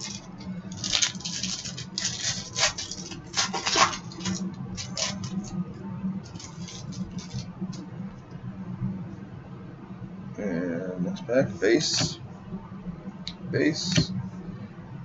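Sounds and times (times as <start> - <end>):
trading cards and packaging rustling: 0.0 - 5.4, 6.3 - 7.5.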